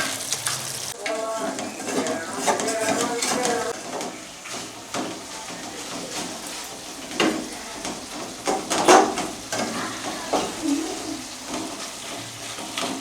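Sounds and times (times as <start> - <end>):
curry sizzling in a pot: 0.0 - 13.0
spoon scraping and knocking pot: 1.0 - 10.6.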